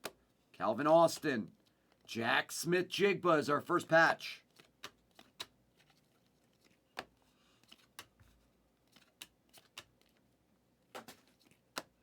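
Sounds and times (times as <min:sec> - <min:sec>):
cards being flipped: 0:04.5 - 0:10.2, 0:10.9 - 0:12.0.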